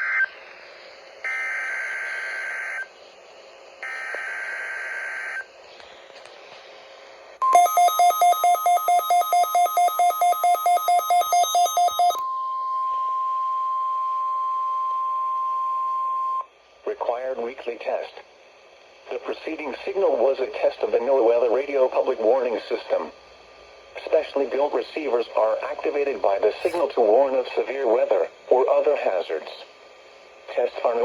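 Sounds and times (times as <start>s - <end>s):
steady warning alarm tone: 1.2s - 2.9s, 3.8s - 5.5s, 7.4s - 16.4s
rapid electronic beeping: 7.5s - 12.2s.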